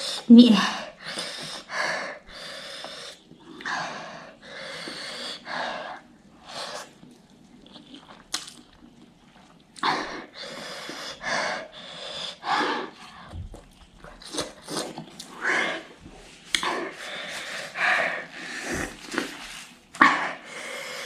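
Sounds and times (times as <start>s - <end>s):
person breathing hard: 16.6s - 19.4s, 20.0s - 21.0s.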